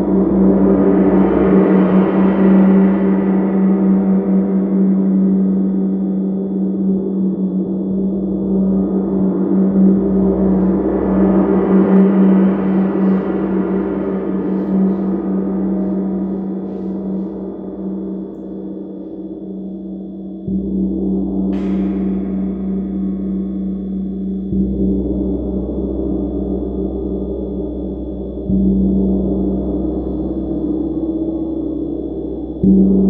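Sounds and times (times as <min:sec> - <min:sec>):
sharp bright gong strike: 0:21.5 - 0:24.2.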